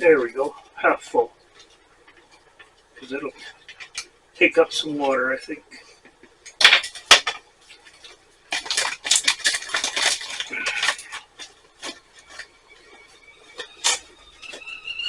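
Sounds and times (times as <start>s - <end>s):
metal scraping and rubbing: 6.8s - 15.0s.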